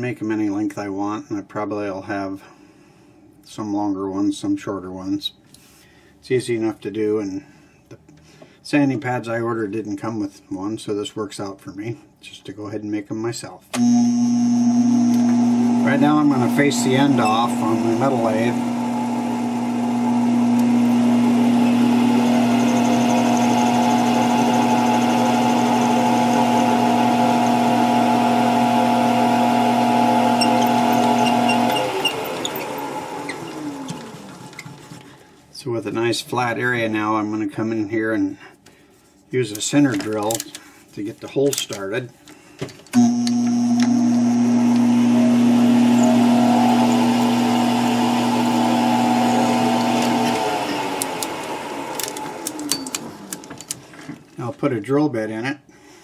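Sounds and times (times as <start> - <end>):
metal lathe running: 13.9 - 34.4, 43.0 - 53.5.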